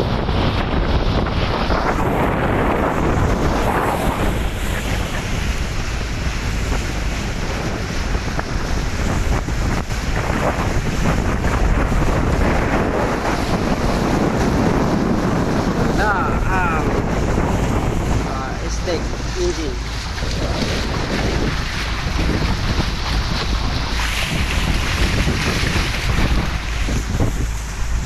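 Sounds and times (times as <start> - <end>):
water rushing past hull: 0.0 - 28.0
wind buffeting microphone: 0.0 - 28.0.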